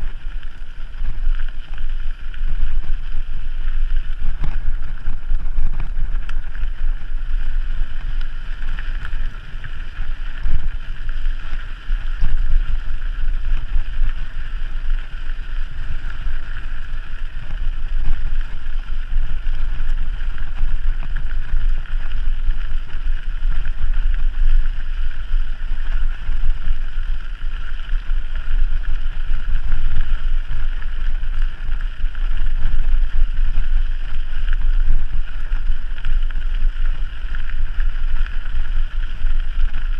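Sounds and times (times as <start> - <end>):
wind buffeting microphone: 0.0 - 31.3.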